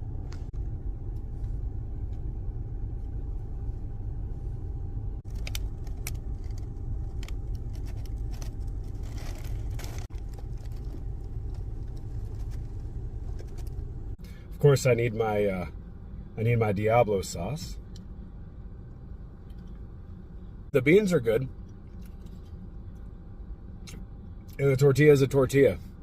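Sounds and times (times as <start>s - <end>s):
car engine cabin rumble: 0.0s - 26.0s
food wrappers crinkling: 5.3s - 13.8s.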